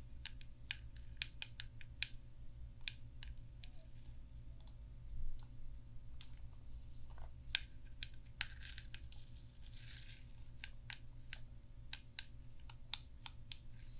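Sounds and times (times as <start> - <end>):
faint low hum: 0.0 - 13.9.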